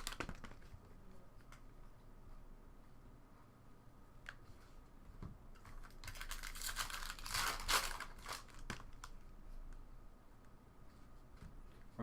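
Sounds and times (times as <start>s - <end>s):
foil wrapper tearing and crinkling: 5.8s - 9.0s.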